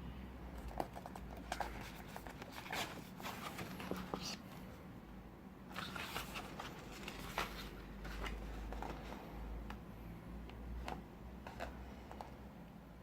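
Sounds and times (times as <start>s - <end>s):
paper and card rustling: 0.8s - 4.7s, 5.7s - 9.2s.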